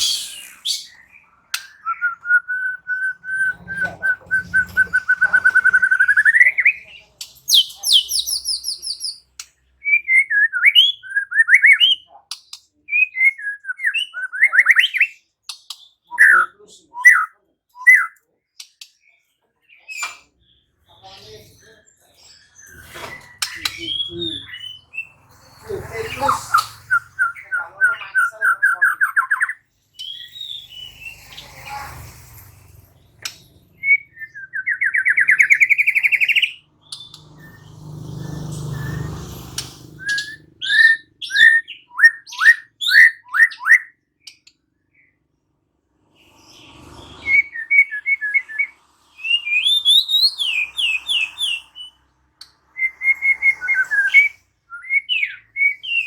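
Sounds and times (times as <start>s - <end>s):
songbird singing trills and whistles: 0.0s - 18.9s, 20.9s - 32.0s, 33.2s - 45.1s, 46.2s - 52.1s, 52.7s - 56.0s.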